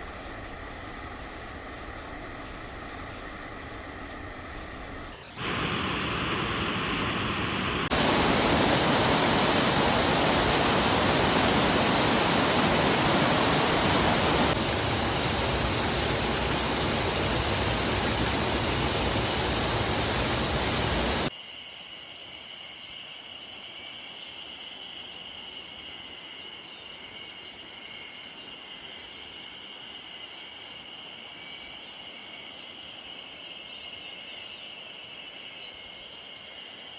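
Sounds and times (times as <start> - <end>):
waterfall roaring: 5.2 - 21.3
high-pitched insect chirring: 5.3 - 7.9.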